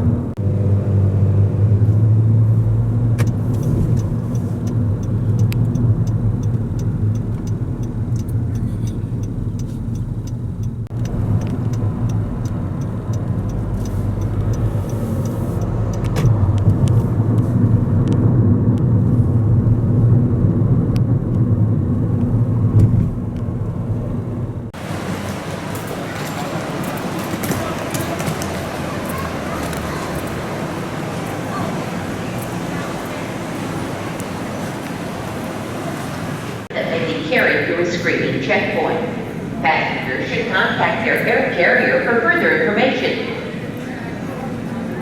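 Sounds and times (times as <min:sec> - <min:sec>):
vehicle interior rumble: 0:00.0 - 0:45.0
faint regular ticking: 0:03.2 - 0:16.4.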